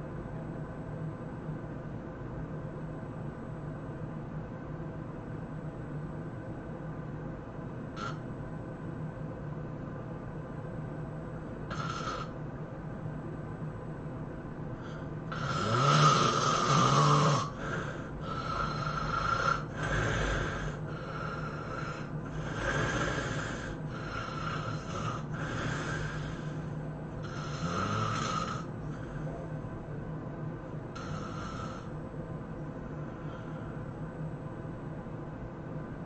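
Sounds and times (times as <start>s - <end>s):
person snoring: 8.0s - 8.2s, 11.7s - 12.4s, 14.8s - 29.3s, 31.0s - 31.9s.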